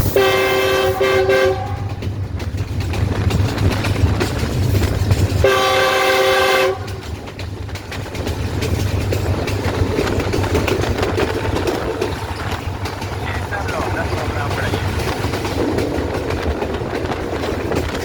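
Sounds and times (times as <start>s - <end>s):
locomotive horn blast: 0.0s - 2.0s, 5.4s - 7.0s
train rumble: 0.0s - 18.0s
wheels clacking over rail joints: 0.0s - 18.0s.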